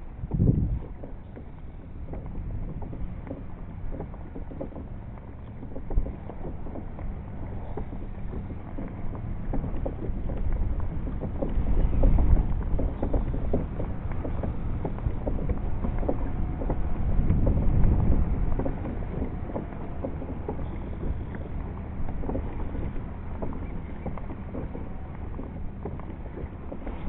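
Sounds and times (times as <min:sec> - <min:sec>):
water lapping against kayak hull: 0:00.0 - 0:27.0
wind rumbling on microphone: 0:00.0 - 0:27.0.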